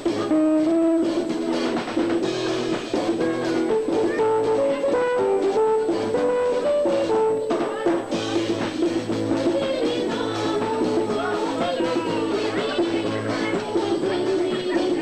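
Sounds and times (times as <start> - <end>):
steady drum beat: 0.0 - 15.0
held note melody: 0.2 - 8.5.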